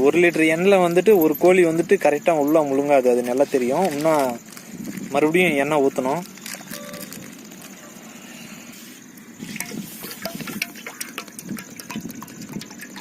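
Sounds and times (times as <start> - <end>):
oil pouring into metal pot: 9.5 - 13.0.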